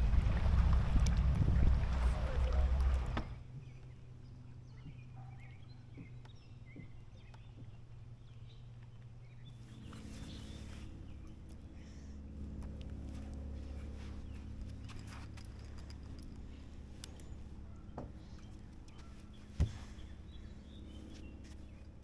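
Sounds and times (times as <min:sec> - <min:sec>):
wind on microphone: 0:00.0 - 0:03.4
boat engine on water: 0:00.0 - 0:03.8
low steady hum: 0:00.0 - 0:22.0.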